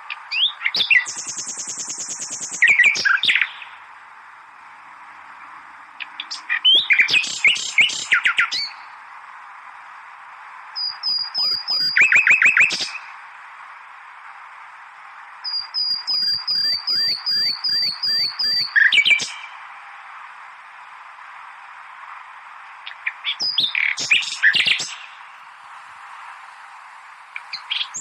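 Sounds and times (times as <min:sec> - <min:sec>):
songbirds chirping and whistling: 0:00.0 - 0:03.8, 0:06.0 - 0:09.0, 0:10.8 - 0:13.1, 0:15.4 - 0:19.7, 0:22.8 - 0:25.4, 0:27.3 - 0:28.0
steady background hiss: 0:00.0 - 0:28.0.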